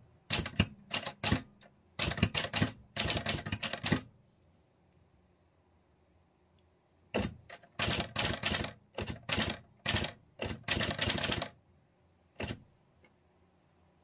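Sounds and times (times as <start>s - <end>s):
typewriter keystrokes: 0.3s - 4.1s, 7.1s - 11.6s, 12.4s - 12.6s.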